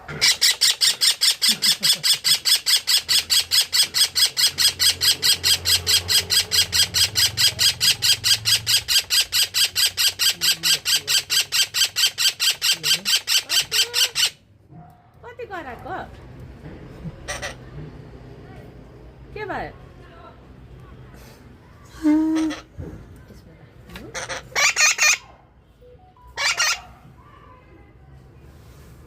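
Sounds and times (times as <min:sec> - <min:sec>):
parrot harsh calls: 0:00.0 - 0:14.4, 0:17.2 - 0:17.7, 0:22.3 - 0:22.8, 0:24.1 - 0:25.4, 0:26.3 - 0:27.0.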